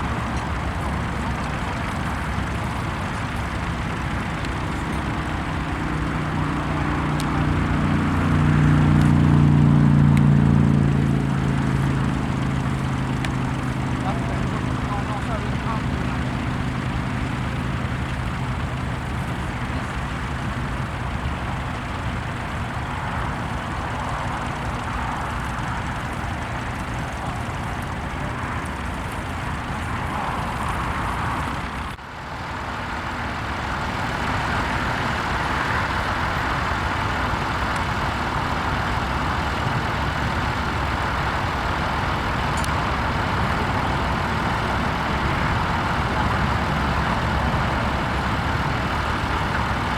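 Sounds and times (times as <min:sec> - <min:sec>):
tractor engine under load: 0:00.0 - 0:49.9.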